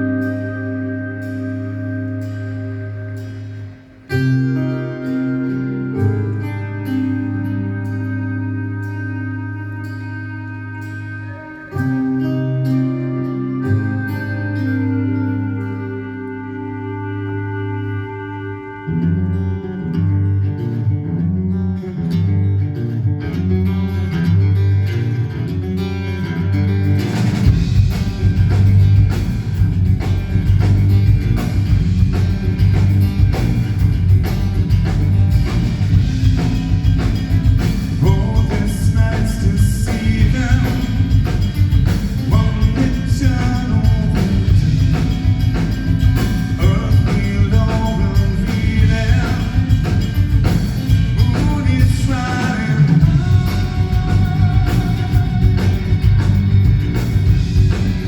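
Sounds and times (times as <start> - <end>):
clean melodic guitar notes: 0.0 - 58.0
rock band playing: 0.0 - 58.0.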